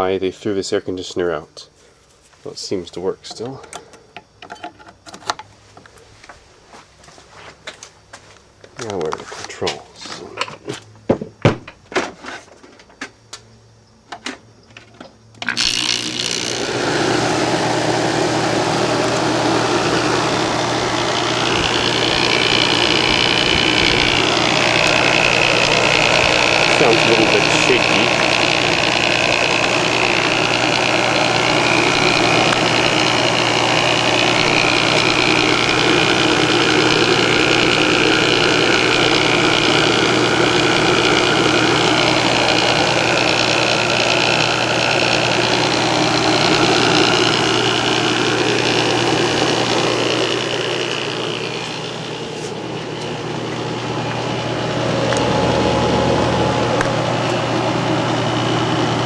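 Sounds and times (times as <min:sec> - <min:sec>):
air conditioner humming: 0:15.2 - 0:59.0
fan rushing: 0:15.4 - 0:59.0.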